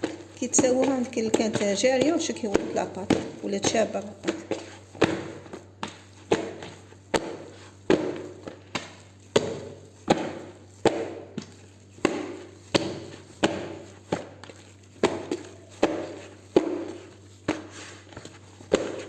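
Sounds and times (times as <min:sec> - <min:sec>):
dough slapped by hand: 0:00.0 - 0:19.0.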